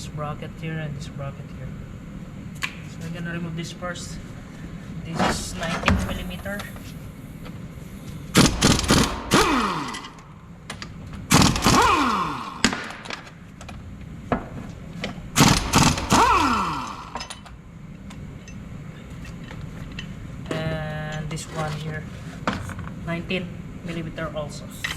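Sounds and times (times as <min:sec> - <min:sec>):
impact wrench hammering: 0:08.3 - 0:10.3, 0:11.3 - 0:13.2, 0:15.4 - 0:17.5
motor whine winding down: 0:08.8 - 0:10.3, 0:11.3 - 0:12.7, 0:15.4 - 0:17.4.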